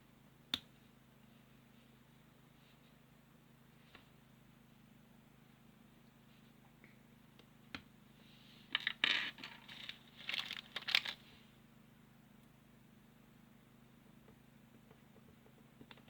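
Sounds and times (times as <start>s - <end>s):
plastic blocks clicking: 8.8s - 11.2s
plastic pieces clattering and rustling: 8.8s - 11.2s.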